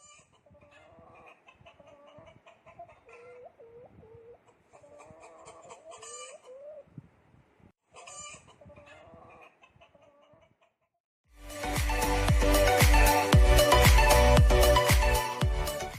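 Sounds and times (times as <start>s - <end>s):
hens clucking: 0.0s - 7.0s, 7.9s - 10.8s
loud electronic dance music: 11.4s - 15.9s.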